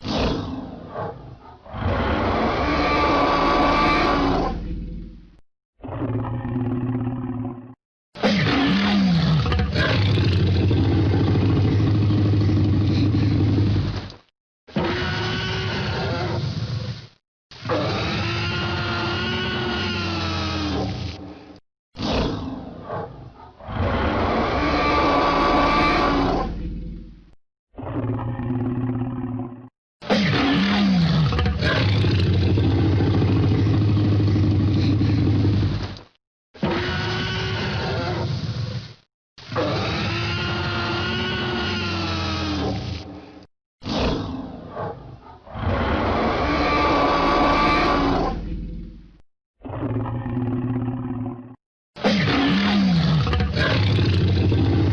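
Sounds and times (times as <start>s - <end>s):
dinosaur roar: 0.0s - 5.1s, 5.8s - 14.0s, 17.6s - 21.2s, 22.0s - 27.1s, 27.8s - 35.8s, 39.5s - 43.1s, 43.8s - 54.9s
low rumbling growl: 1.8s - 7.8s, 9.4s - 14.0s, 23.8s - 29.7s, 31.3s - 35.8s, 45.6s - 51.6s.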